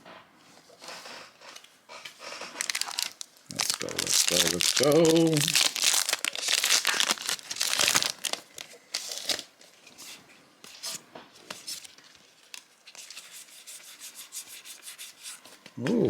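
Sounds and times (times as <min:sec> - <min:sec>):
wrapper crinkling and tearing: 0:02.5 - 0:09.5.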